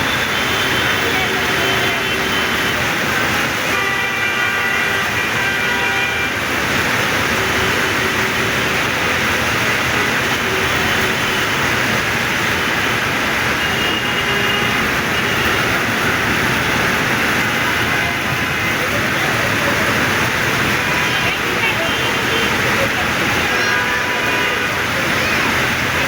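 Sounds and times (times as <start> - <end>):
heavy rain pouring: 0.0 - 26.0.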